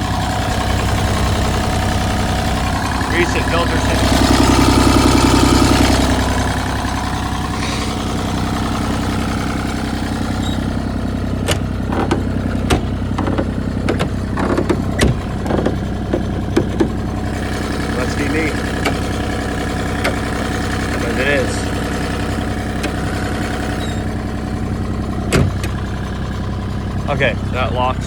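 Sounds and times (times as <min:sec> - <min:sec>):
diesel engine idling: 0:00.0 - 0:28.0
sharp metallic clicks and knocks: 0:11.4 - 0:17.1, 0:18.6 - 0:19.1, 0:20.0 - 0:20.3.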